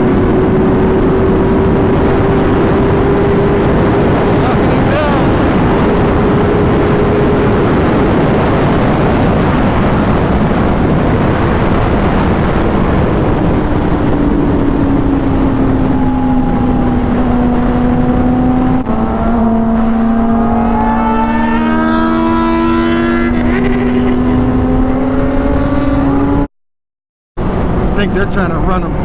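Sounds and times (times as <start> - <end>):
motorcycle engine drone: 0.0 - 26.5, 27.4 - 29.0
wind rush: 0.0 - 26.5, 27.4 - 29.0.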